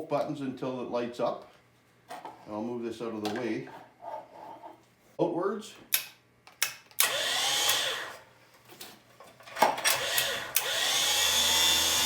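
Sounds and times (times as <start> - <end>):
sharp click: 5.9 - 7.1
electric winch motor running: 7.0 - 8.2, 9.9 - 12.0.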